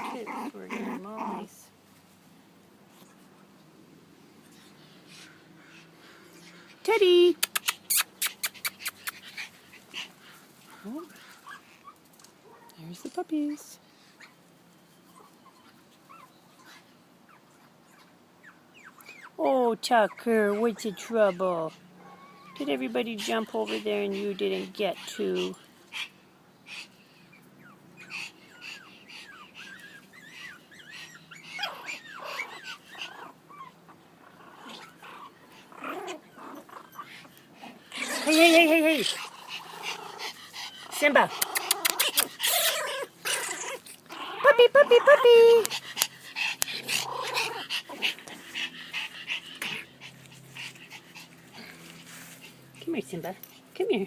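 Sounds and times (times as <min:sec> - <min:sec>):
puppies yipping and whining: 0:10.8 - 0:12.1, 0:14.1 - 0:19.4, 0:20.0 - 0:52.8.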